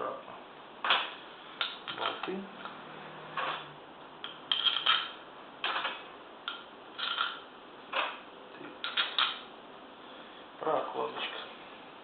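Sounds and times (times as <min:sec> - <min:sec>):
small metal parts clicking: 0:04.2 - 0:08.1.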